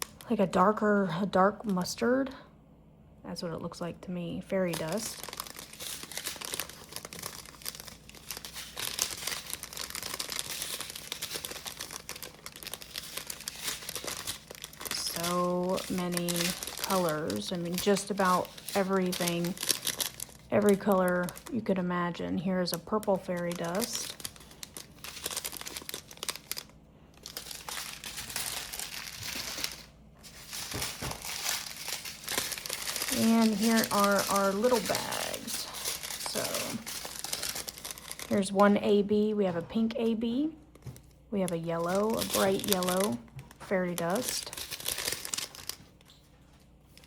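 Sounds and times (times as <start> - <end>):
plastic bags crinkling: 4.6 - 38.8, 40.7 - 47.0.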